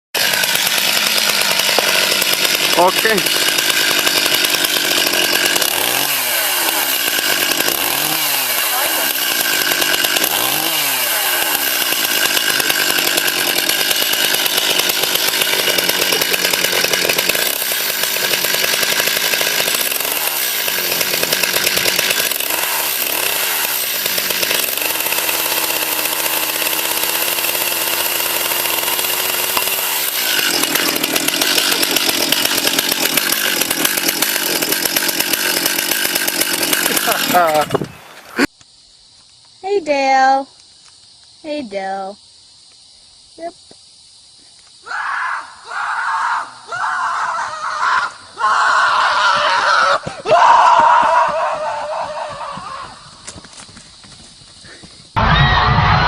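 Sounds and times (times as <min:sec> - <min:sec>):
chainsaw engine revving: 0:00.2 - 0:38.5.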